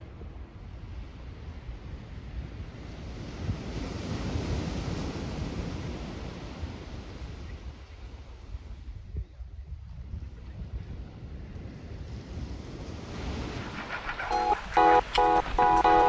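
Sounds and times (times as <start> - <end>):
wind rumbling on microphone: 4.8 - 16.0
ocean surf breaking: 12.9 - 16.0.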